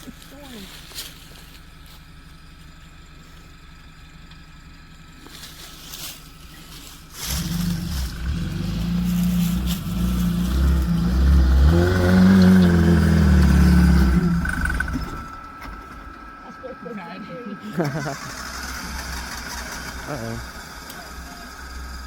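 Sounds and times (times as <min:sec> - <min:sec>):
engine revving hard: 0:07.1 - 0:15.4, 0:17.8 - 0:21.6.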